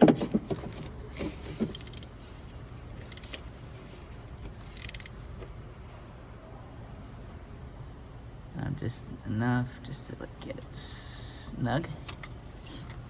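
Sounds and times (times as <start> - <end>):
ratchet wrench clicking: 1.7 - 2.1, 3.0 - 3.5, 4.6 - 5.2.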